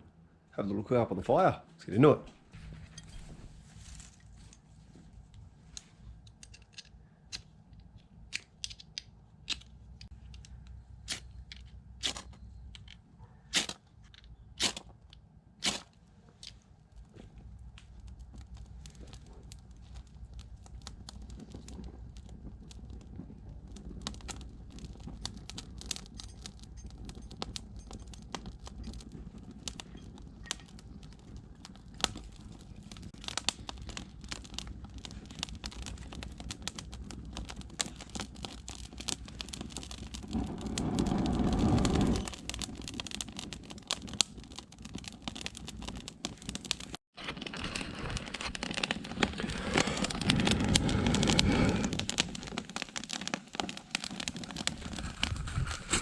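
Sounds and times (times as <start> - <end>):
fire crackling: 2.0 - 56.0
paper crumpling: 47.2 - 52.8, 54.2 - 56.0.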